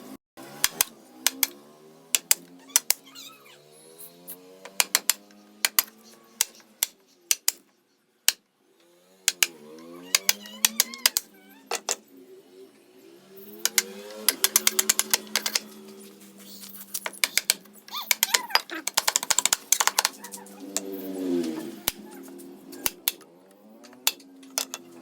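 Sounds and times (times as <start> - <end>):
sharp tapping clicks: 0.6 - 1.6, 4.6 - 7.7, 10.2 - 12.0, 13.6 - 15.8, 16.9 - 21.0, 22.7 - 24.9.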